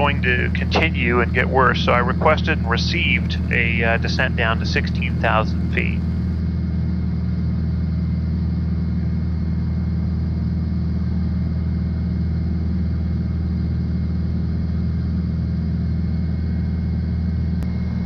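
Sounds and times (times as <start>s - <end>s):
airplane engine and propeller drone: 0.0s - 18.0s.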